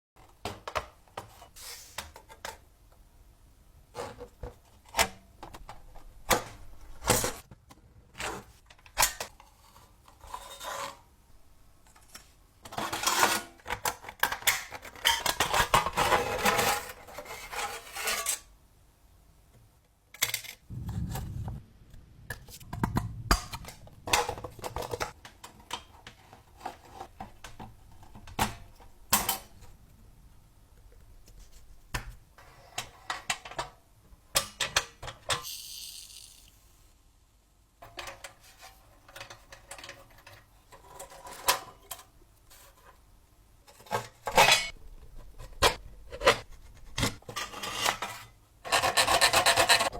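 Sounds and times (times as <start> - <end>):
dense scraping: 20.7 - 25.2.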